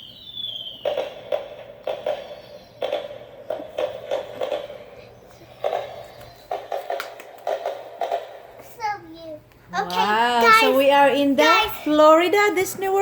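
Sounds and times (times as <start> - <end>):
falling firework whistle: 0.0 - 3.0
firework bangs from toy speaker: 0.7 - 3.2.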